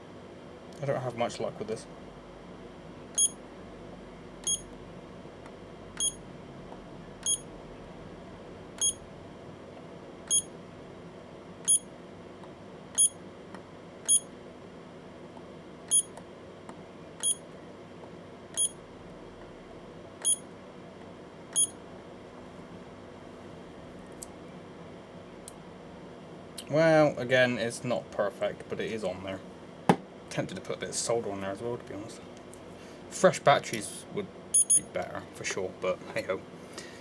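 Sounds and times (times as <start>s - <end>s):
spot welder beeping: 3.2s - 3.4s, 4.4s - 4.7s, 6.0s - 6.3s, 7.2s - 7.5s, 8.8s - 9.0s, 10.3s - 10.5s, 11.6s - 11.9s, 13.0s - 13.2s, 14.0s - 14.3s, 15.9s - 16.2s, 17.2s - 17.5s, 18.5s - 18.8s, 20.2s - 20.5s, 21.5s - 21.8s, 34.5s - 35.0s.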